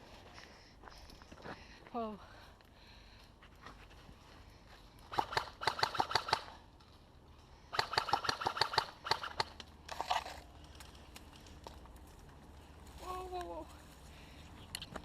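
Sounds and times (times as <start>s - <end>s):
airsoft gun firing bursts: 5.1s - 6.6s, 7.7s - 9.6s.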